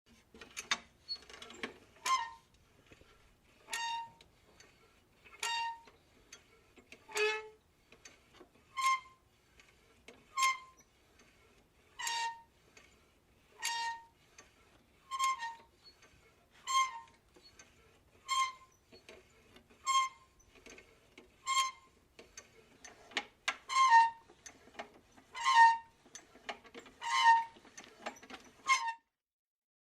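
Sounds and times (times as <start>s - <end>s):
squeaky handle: 0.4s - 12.9s, 13.5s - 29.1s.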